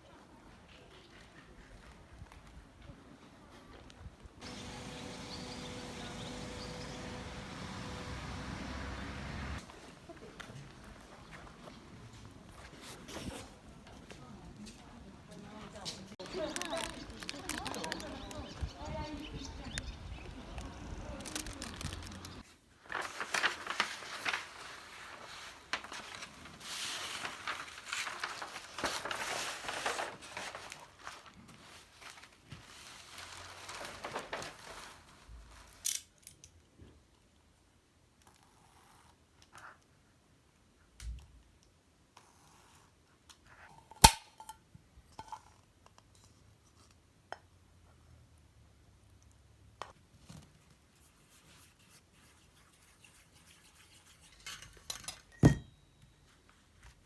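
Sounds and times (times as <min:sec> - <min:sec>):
rustling and scraping: 0:10.5 - 0:14.8, 0:20.5 - 0:35.8.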